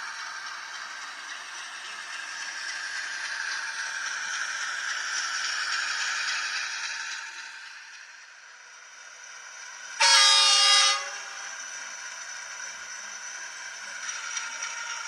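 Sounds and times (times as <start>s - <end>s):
model train horn blast: 10.0s - 11.5s.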